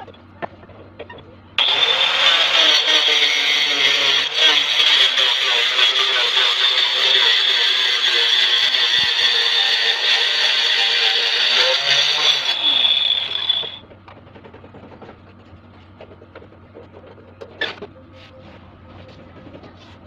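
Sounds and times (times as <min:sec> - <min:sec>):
angle grinder whining: 0:01.6 - 0:13.8.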